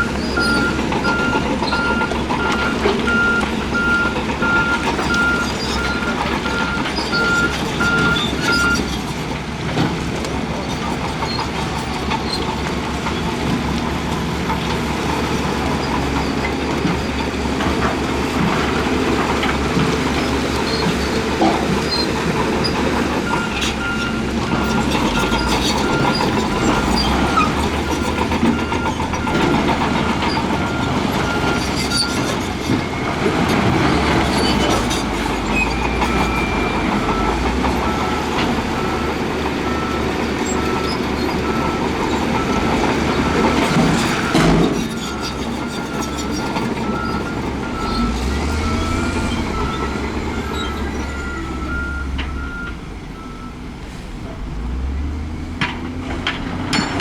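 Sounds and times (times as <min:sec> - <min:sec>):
reversing alarm beeping: 0:00.0 - 0:08.8, 0:20.8 - 0:53.8
diesel earthmoving machinery running: 0:00.0 - 0:57.0.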